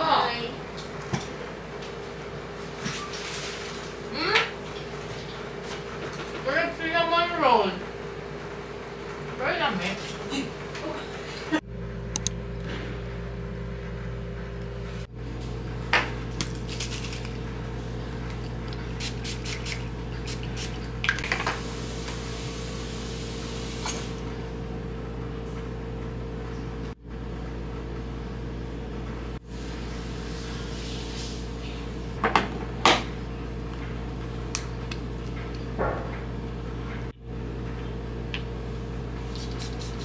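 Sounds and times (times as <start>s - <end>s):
indoor machine hum: 0.0s - 40.0s.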